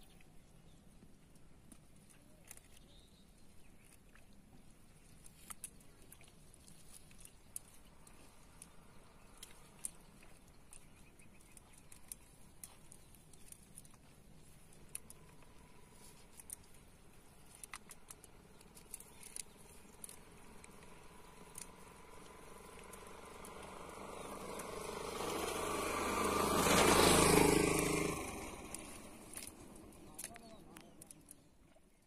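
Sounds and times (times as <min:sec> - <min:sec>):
faint clicks: 0:05.0 - 0:25.5, 0:27.7 - 0:31.4
vehicle engine passing by: 0:18.2 - 0:30.4.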